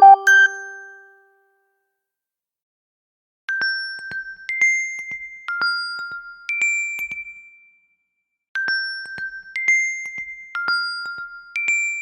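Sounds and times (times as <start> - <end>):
bell-like chime melody: 0.0 - 1.2.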